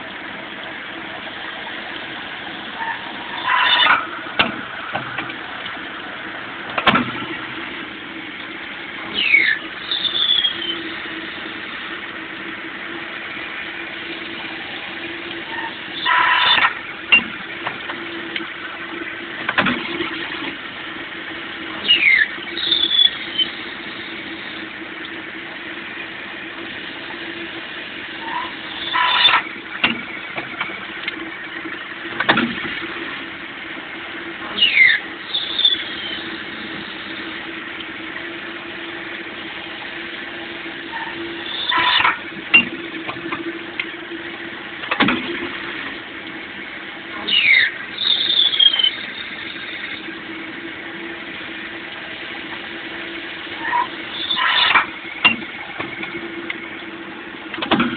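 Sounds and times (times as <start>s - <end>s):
lathe machine hum: 0.0s - 57.9s
high squeal falling in pitch: 2.8s - 4.1s, 9.1s - 10.9s, 21.8s - 23.6s, 34.6s - 36.2s, 47.3s - 49.7s.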